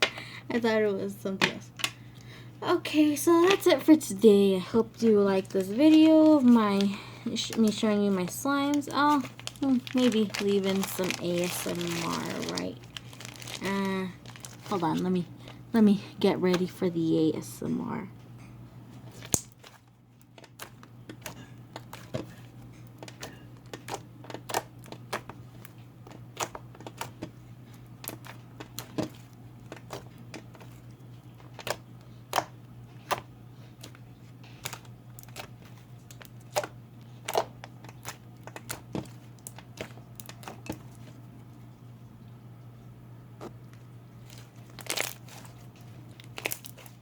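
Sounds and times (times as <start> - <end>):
slime squished with clicks and pops: 19.3 - 19.6.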